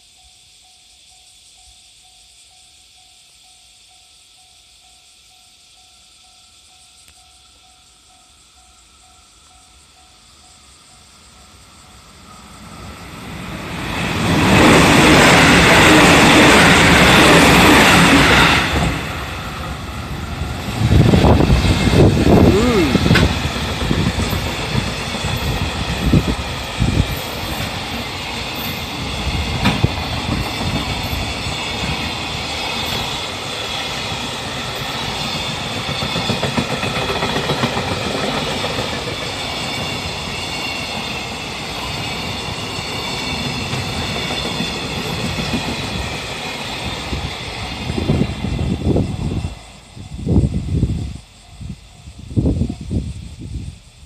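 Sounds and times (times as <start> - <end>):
freight train rolling past: 0.0 - 54.0
wheels clacking over rail joints: 13.7 - 47.6.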